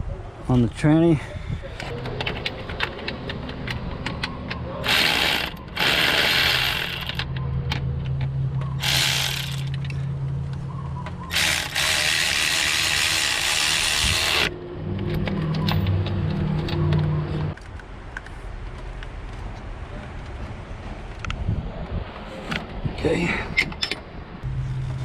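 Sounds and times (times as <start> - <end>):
ratchet wrench clicking: 8.8 - 9.8.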